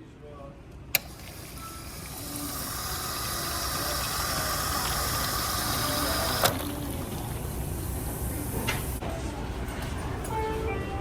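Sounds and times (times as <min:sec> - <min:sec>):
toilet flushing: 0:01.0 - 0:09.0.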